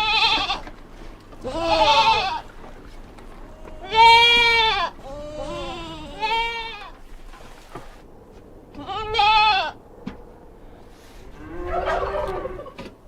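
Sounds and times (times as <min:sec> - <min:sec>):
farm animal bleating: 0:00.0 - 0:02.6, 0:03.5 - 0:07.1, 0:08.7 - 0:09.8.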